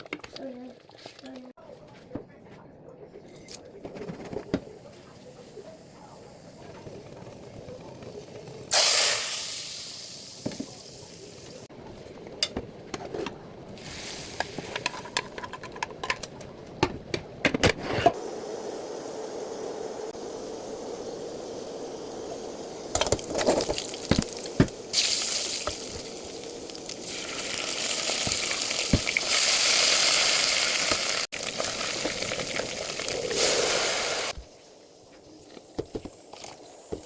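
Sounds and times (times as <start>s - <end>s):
food sizzling in hot oil: 8.7s - 11.6s, 18.1s - 34.9s.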